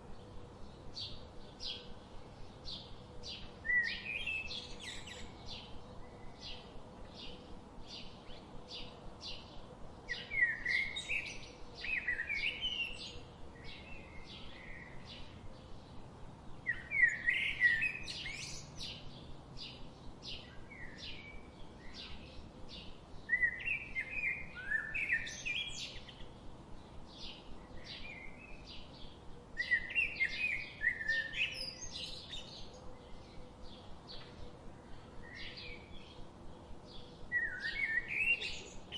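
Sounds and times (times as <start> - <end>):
jumbled bird song phrase: 0.1 - 38.9.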